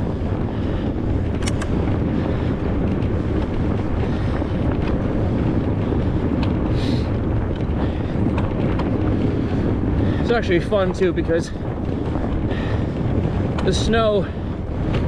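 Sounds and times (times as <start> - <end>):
wind rumble on microphone: 0.0 - 15.0
sharp clicks: 1.4 - 1.8.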